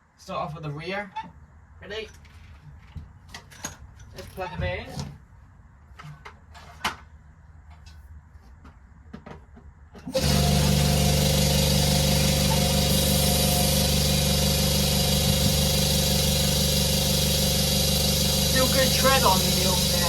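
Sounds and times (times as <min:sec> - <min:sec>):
tyre inflator compressor humming: 0:10.1 - 0:20.0.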